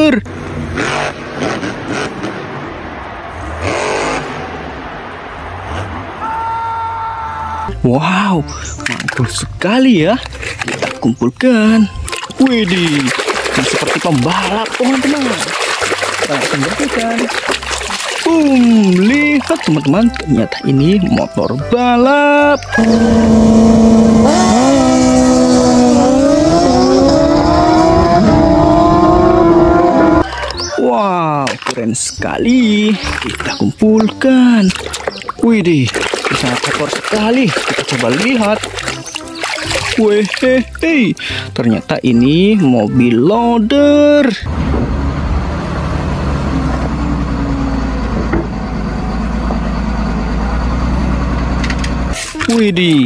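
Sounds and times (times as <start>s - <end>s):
motorcycle engine revving: 0.3s - 2.6s, 3.5s - 4.8s, 22.6s - 30.2s.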